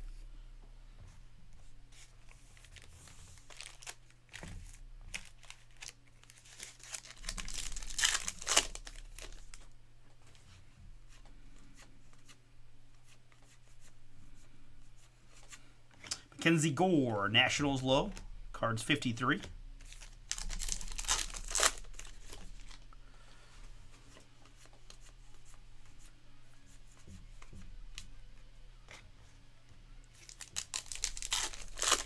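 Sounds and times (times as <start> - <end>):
cards rustling: 2.2 - 9.7, 15.3 - 22.9, 30.1 - 32.0
wrapper tearing and crinkling: 2.8 - 4.4, 5.1 - 9.6, 19.9 - 22.9, 30.2 - 32.0.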